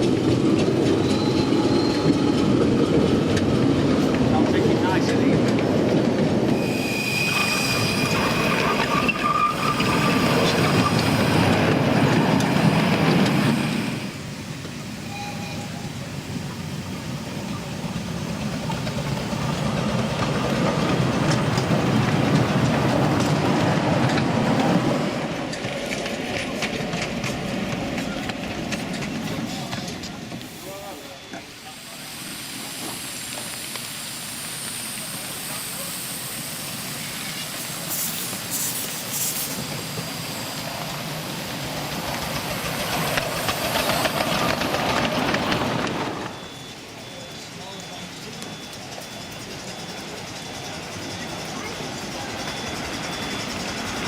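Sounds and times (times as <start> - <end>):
wheels clicking over rail joints: 0.0 - 6.6, 17.5 - 30.5, 40.7 - 54.0
steam hisses: 0.0 - 26.0, 27.1 - 54.0
miniature train passing: 0.0 - 54.0
steam locomotive exhaust beats: 0.0 - 54.0.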